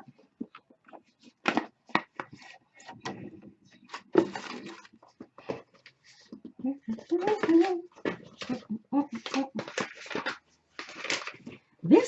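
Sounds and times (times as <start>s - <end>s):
package being opened by hand: 7.0s - 11.6s.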